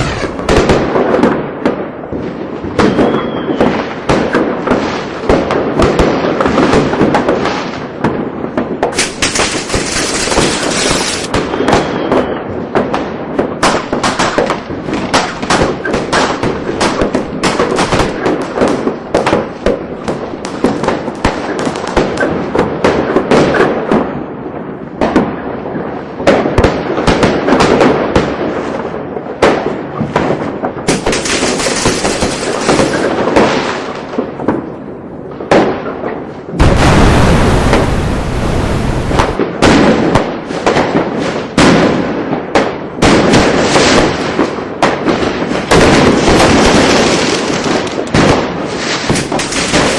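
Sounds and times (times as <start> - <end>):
fireworks cracks and bangs: 0.0 - 49.9
high hissing crackle: 9.0 - 11.3, 36.6 - 39.4.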